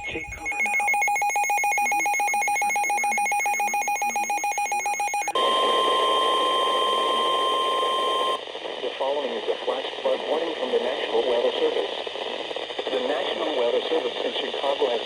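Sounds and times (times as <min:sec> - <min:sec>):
pulsing ringing alert tone: 0:00.0 - 0:08.4
steady alarm tone: 0:00.0 - 0:08.4
radio static: 0:00.0 - 0:15.0.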